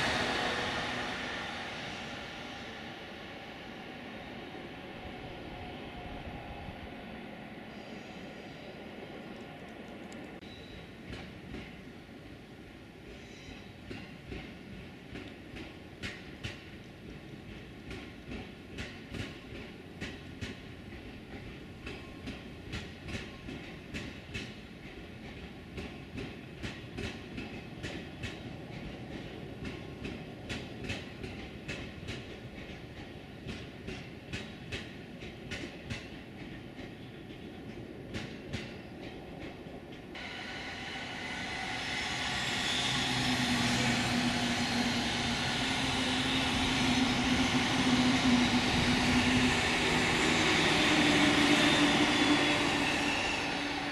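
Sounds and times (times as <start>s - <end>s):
rushing noise: 0.0s - 4.4s, 40.2s - 53.9s
train wheels clacking on rail joints: 13.0s - 53.9s.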